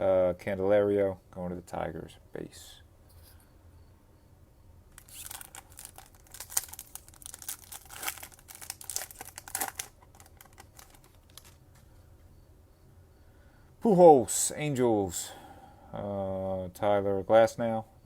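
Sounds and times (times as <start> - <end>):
wrapper crinkling and tearing: 5.0 - 11.6.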